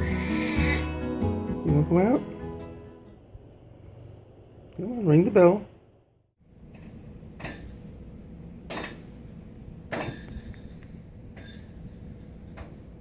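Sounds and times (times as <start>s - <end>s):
bells jingling: 6.9s - 13.0s.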